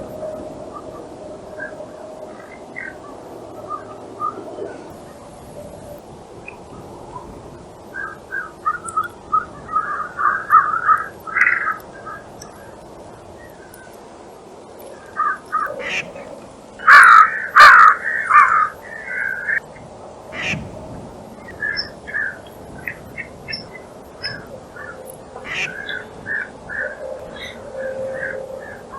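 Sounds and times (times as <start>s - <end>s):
wild birds calling: 14.8s - 19.6s, 20.3s - 28.9s.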